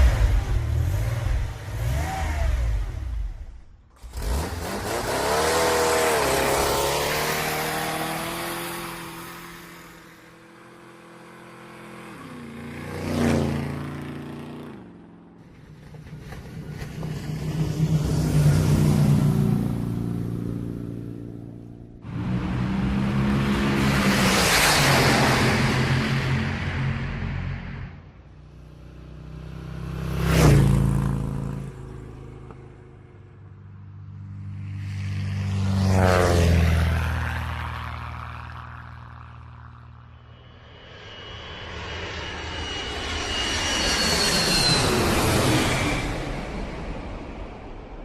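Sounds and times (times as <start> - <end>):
vehicle engine revving: 0.0 - 10.0
vehicle passing by: 4.0 - 47.0.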